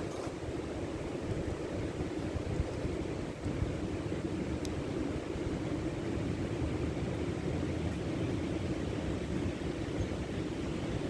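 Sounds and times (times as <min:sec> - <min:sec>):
campfire crackle: 0:00.0 - 0:11.0
river rushing: 0:00.0 - 0:11.0
wind rumbling on microphone: 0:00.0 - 0:11.0.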